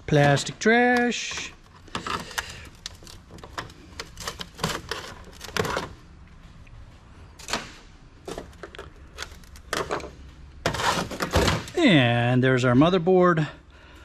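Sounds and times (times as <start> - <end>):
computer parts clicking and knocking: 0.1 - 6.0, 7.4 - 11.8.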